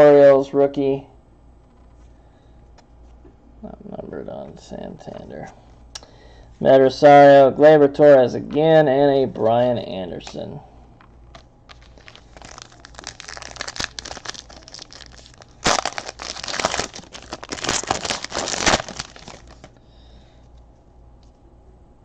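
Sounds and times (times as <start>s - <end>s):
foil wrapper crinkling and tearing: 11.7s - 19.7s.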